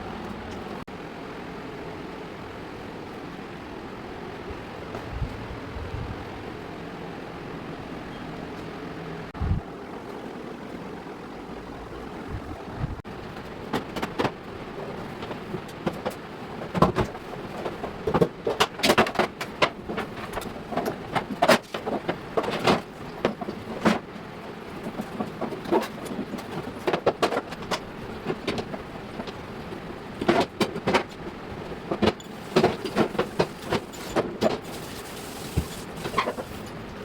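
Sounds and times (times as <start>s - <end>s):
steady low hum: 0.0s - 18.5s
objects knocking and clicking: 15.2s - 24.1s, 30.2s - 31.3s, 31.9s - 36.8s.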